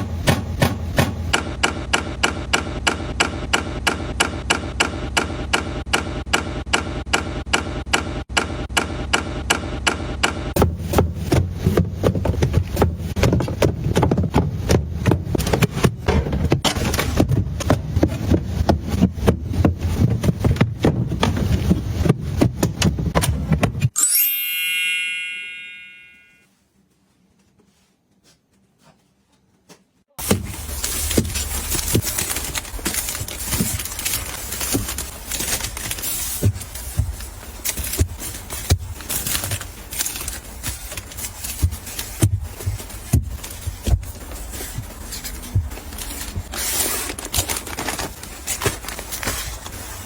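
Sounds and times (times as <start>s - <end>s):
bright ding: 24.0s - 26.5s.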